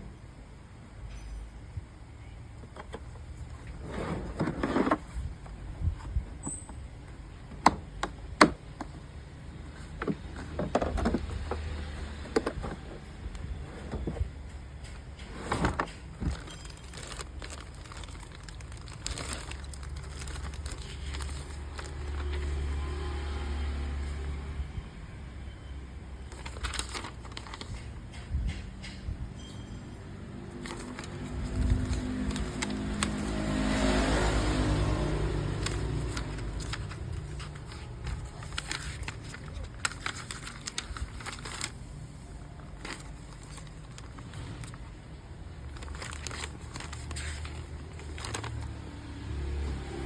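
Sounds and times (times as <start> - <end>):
handling clicks and knocks: 2.6 - 9.0, 9.8 - 18.0
hard objects knocking and clicking: 9.9 - 13.1.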